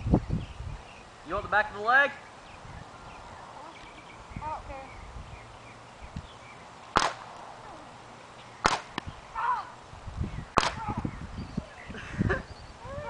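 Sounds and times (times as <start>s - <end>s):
paintball gun shots: 6.9s - 7.3s, 8.6s - 9.1s, 10.6s - 10.9s.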